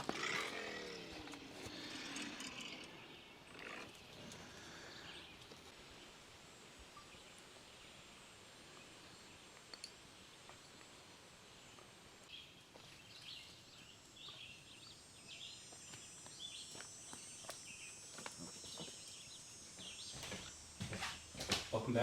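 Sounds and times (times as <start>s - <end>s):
bird chirps: 0.0s - 5.6s.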